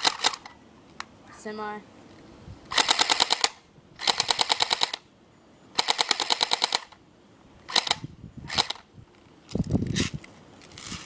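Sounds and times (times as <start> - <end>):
airsoft rifle firing bursts: 2.7 - 5.0, 5.8 - 6.9, 7.7 - 8.8.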